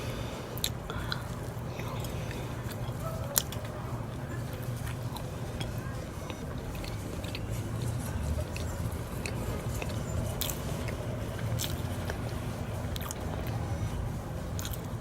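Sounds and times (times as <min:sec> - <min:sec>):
close-mic chewing and biting: 0:00.0 - 0:15.0
steady low hum: 0:00.0 - 0:15.0
wet mouth clicks: 0:00.6 - 0:03.7, 0:08.5 - 0:12.2, 0:13.0 - 0:13.6, 0:14.6 - 0:14.9.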